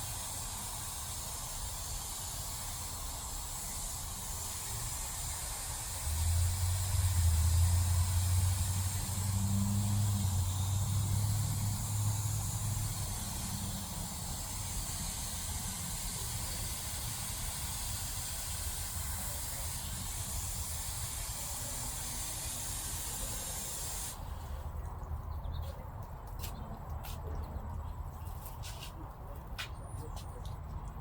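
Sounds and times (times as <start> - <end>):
steady hiss: 0.0 - 24.6.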